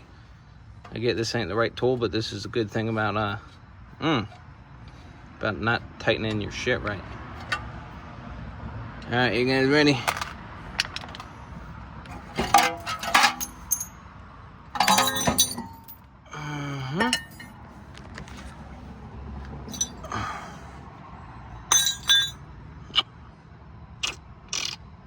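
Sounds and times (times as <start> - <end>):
metal tools clanking: 12.1 - 14.0, 14.8 - 16.0, 16.9 - 17.6, 19.7 - 20.3, 21.7 - 22.4.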